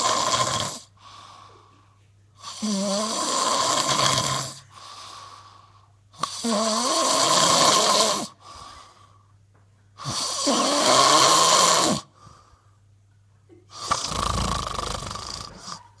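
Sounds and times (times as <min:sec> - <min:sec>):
person snoring: 0:00.0 - 0:00.9, 0:02.4 - 0:05.4, 0:06.2 - 0:08.4, 0:10.0 - 0:12.2, 0:13.7 - 0:15.8.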